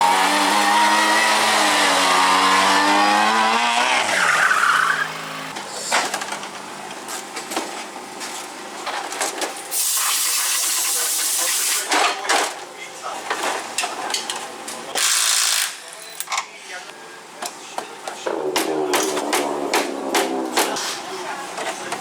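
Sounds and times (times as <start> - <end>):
rally car engine revving: 0.0 - 5.6, 18.3 - 21.4
loud hiss: 9.7 - 11.9
knocks and clatter: 17.8 - 22.0.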